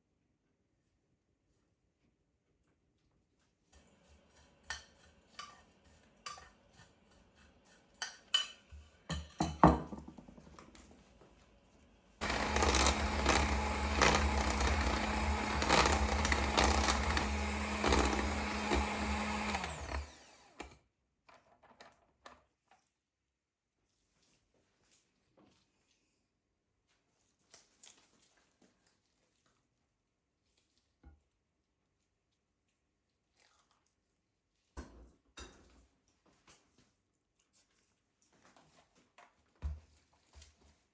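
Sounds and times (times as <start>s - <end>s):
things being handled: 12.2s - 20.2s
kitchen appliance motor whirring: 12.2s - 20.8s.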